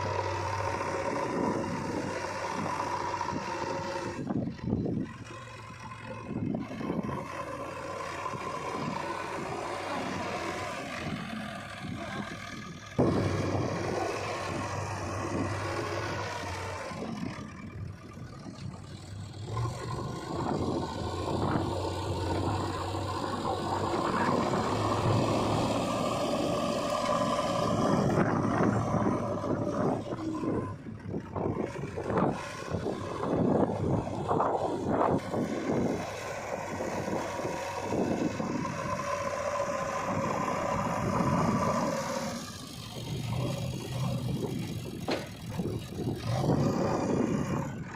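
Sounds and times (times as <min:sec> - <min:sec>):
diesel engines running: 0:00.0 - 0:47.9.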